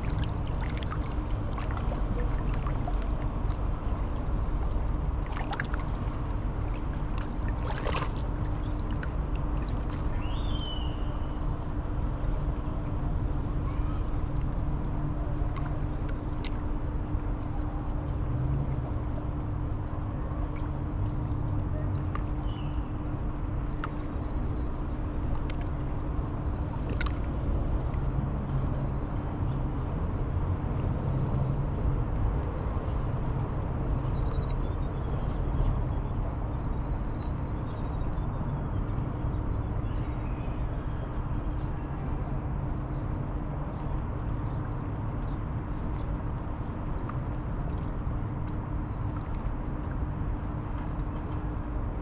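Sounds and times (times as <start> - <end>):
constant low hum: 0.0 - 52.0
bird chirps: 10.2 - 11.2.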